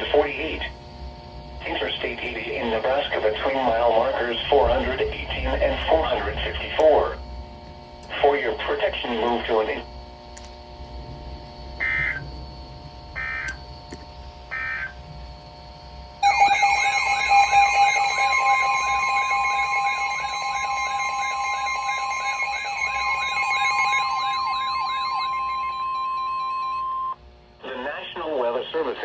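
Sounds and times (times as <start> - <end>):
buzzy digital data tone: 11.8 - 12.4, 16.2 - 27.8
loud warbling alert tone: 16.2 - 27.2.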